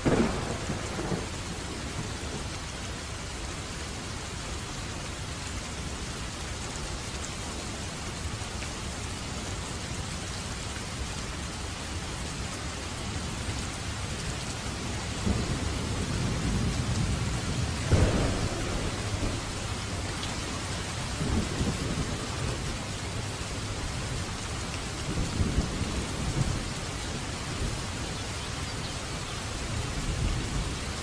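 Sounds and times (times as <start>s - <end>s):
thunder rumbling: 0.0s - 2.5s, 14.7s - 28.1s
heavy rain falling: 0.0s - 31.0s.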